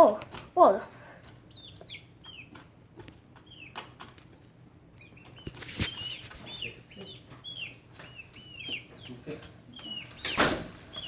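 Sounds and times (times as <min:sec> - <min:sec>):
birds chirping: 0:01.4 - 0:02.6, 0:03.3 - 0:03.9, 0:04.9 - 0:11.0.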